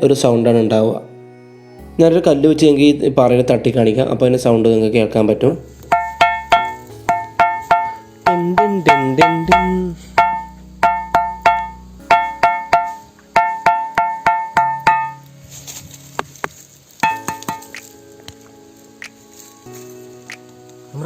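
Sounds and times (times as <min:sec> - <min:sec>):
stone striking a ringing rock: 0:05.9 - 0:15.2, 0:16.2 - 0:17.9.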